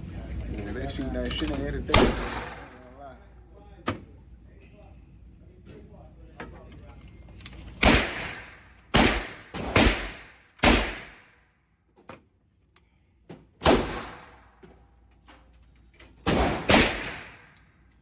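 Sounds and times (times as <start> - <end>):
gunshots with ringing echo: 1.9 - 2.8, 7.8 - 11.2, 13.6 - 14.4, 16.3 - 17.5.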